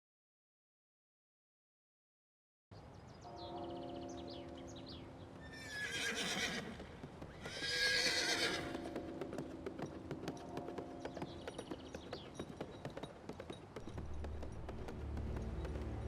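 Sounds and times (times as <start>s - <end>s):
hooves clip-clopping: 4.3s - 16.0s
horse whinnying: 5.5s - 9.0s.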